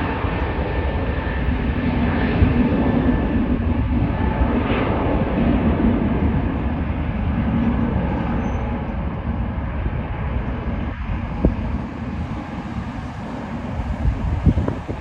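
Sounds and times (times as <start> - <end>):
jet engines roaring at takeoff: 0.0 - 15.0.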